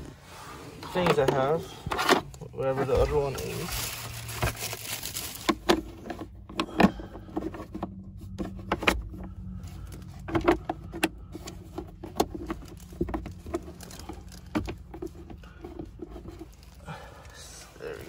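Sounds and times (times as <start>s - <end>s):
steady low hum: 5.6s - 18.0s
plastic parts clicking and knocking: 10.1s - 16.6s.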